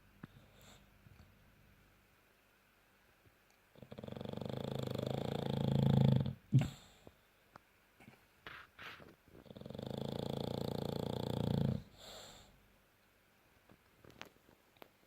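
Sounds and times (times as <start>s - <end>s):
dog snoring: 3.7s - 7.0s, 9.4s - 12.5s.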